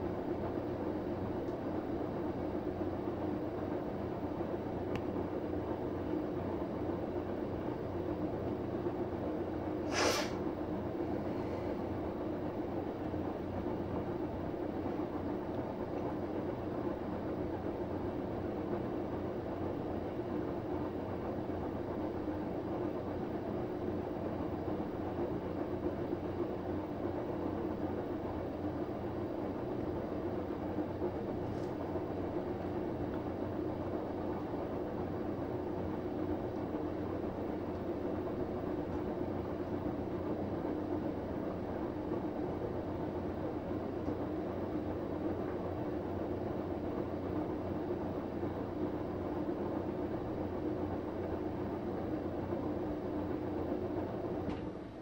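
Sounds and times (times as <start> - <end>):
washing machine motor hum: 0.0 - 55.0
short hissing swish: 9.8 - 10.4.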